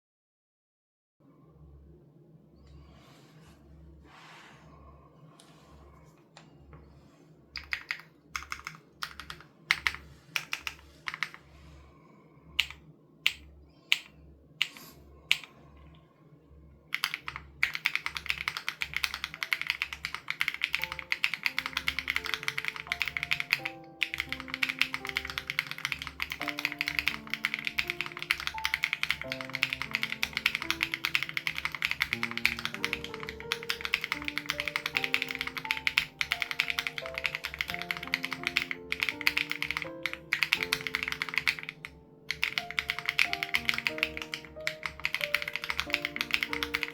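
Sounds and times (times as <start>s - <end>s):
mechanical keyboard typing: 7.6s - 11.4s, 12.6s - 15.5s, 16.9s - 46.9s.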